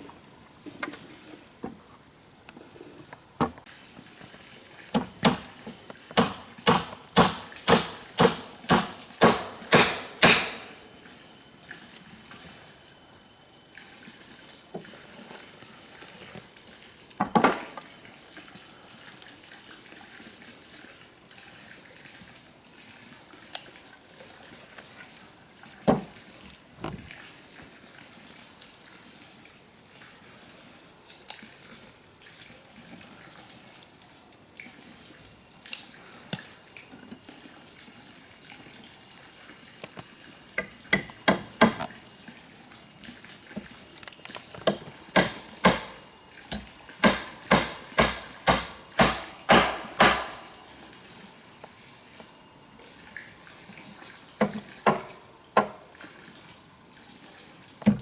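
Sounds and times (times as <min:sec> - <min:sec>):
tool knocking on material: 0:05.0 - 0:10.8, 0:45.2 - 0:46.0, 0:47.0 - 0:50.5.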